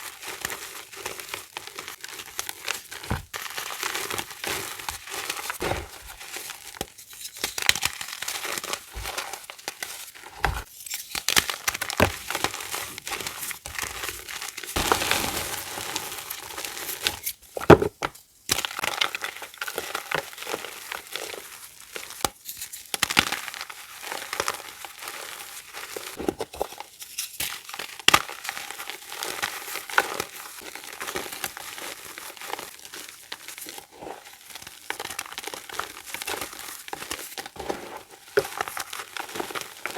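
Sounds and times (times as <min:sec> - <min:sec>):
chalk being crushed: 0:00.0 - 0:11.1, 0:29.3 - 0:39.9.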